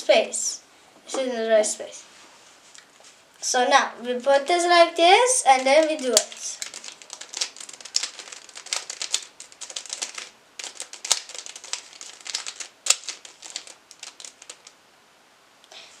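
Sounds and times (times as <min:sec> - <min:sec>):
plastic puzzle cube clicking: 0:05.6 - 0:14.7.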